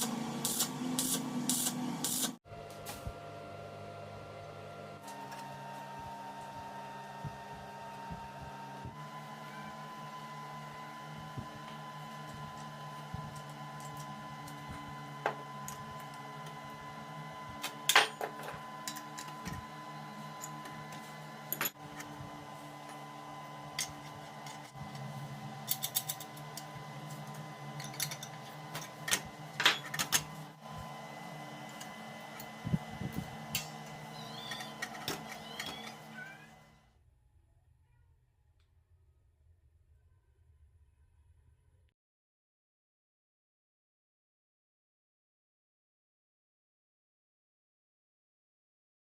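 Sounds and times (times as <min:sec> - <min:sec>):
steady machine hum: 0:00.0 - 0:37.6.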